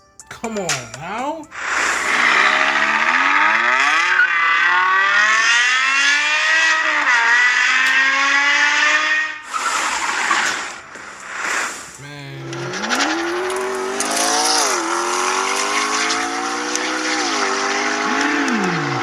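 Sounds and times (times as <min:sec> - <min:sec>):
hiss-like noise: 0:01.5 - 0:02.8, 0:09.5 - 0:14.4
car engine accelerating hard: 0:01.6 - 0:19.0.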